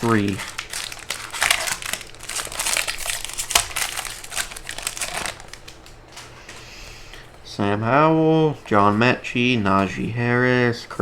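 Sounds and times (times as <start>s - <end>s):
plastic wrapper crinkling: 0.0s - 7.4s.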